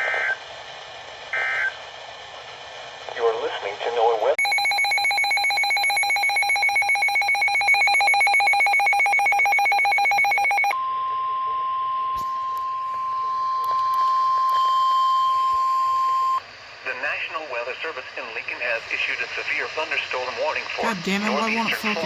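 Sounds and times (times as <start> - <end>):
rapid trilling alarm beeps: 4.4 - 10.8
steady single-pitch alarm tone: 4.4 - 16.4.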